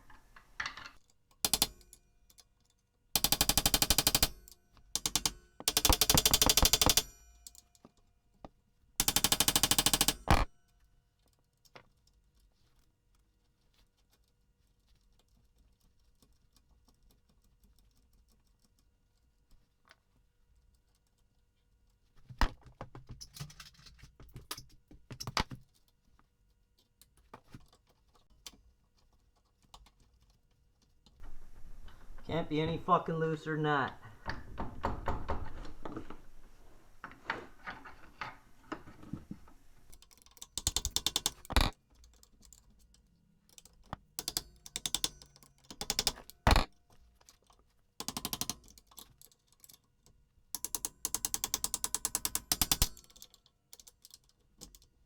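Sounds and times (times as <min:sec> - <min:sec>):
hand tools clicking on metal parts: 0:00.0 - 0:08.0, 0:09.0 - 0:10.5, 0:39.9 - 0:49.8, 0:50.6 - 0:54.9
impact wrench hammering: 0:01.4 - 0:01.9, 0:03.2 - 0:07.6, 0:09.0 - 0:10.5, 0:34.2 - 0:36.0, 0:40.6 - 0:41.7, 0:44.2 - 0:46.7.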